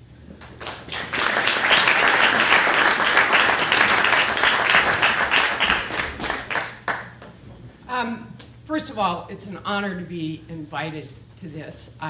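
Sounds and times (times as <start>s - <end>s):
audience applauding: 0.4s - 7.3s.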